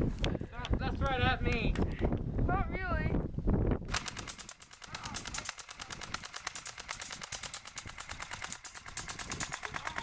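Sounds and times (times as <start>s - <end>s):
airsoft rifle firing full auto: 3.9s - 10.0s.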